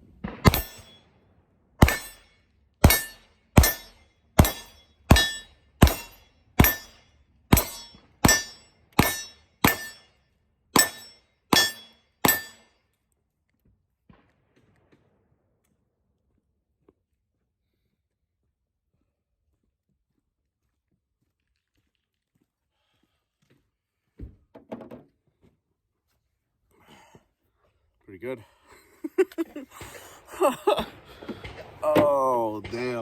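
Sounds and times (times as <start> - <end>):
pistol shots: 0.2 - 1.0, 1.8 - 10.0.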